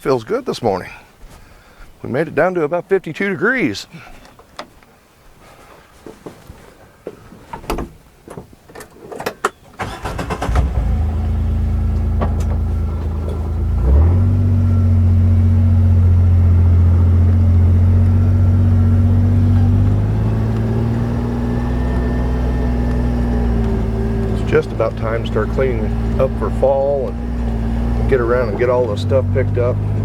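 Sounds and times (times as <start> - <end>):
vehicle engine running: 9.8 - 30.0.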